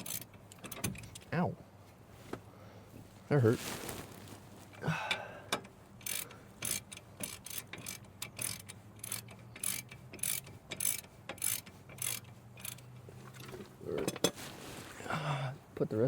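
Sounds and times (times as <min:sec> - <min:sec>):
ratchet wrench clicking: 0:00.0 - 0:01.0, 0:05.5 - 0:12.9.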